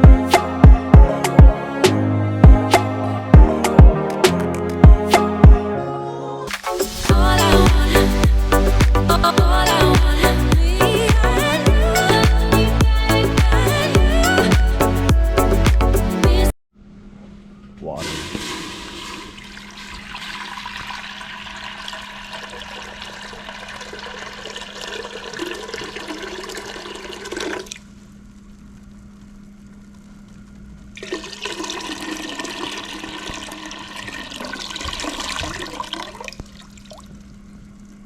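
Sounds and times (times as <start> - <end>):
water pouring into a pot: 18.0 - 27.8, 31.0 - 37.0.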